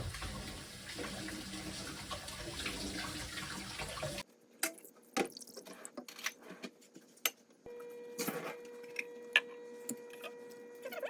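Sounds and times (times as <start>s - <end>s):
tap water running into sink: 0.0s - 4.2s.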